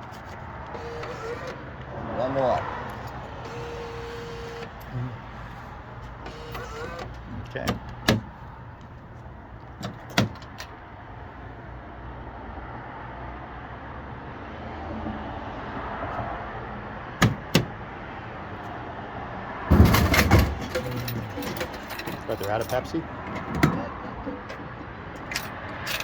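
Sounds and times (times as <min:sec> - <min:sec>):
vending machine hum: 0:00.0 - 0:10.9, 0:17.2 - 0:18.6, 0:19.7 - 0:26.0
vending machine clicks: 0:17.2 - 0:17.8.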